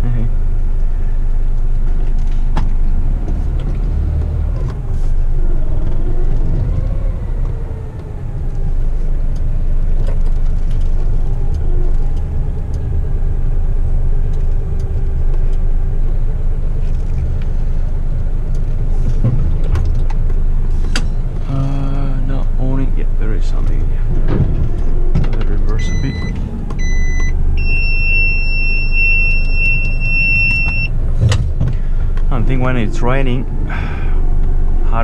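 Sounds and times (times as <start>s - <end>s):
truck engine rumbling: 0.0s - 35.0s.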